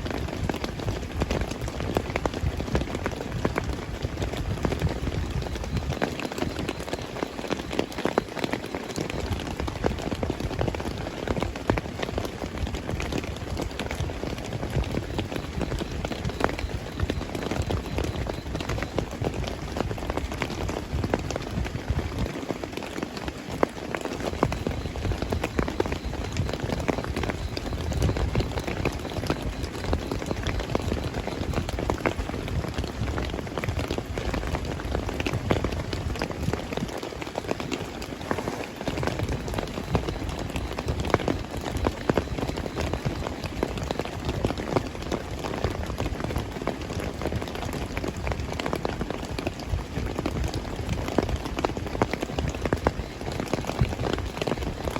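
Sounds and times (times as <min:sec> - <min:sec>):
heavy rain falling: 0:00.0 - 0:54.9.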